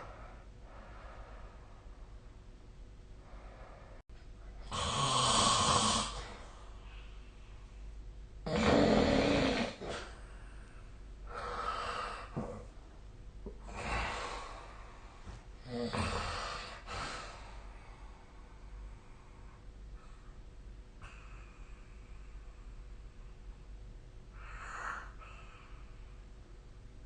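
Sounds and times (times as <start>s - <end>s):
person snoring: 4.6s - 6.5s, 8.5s - 10.2s, 15.6s - 17.4s.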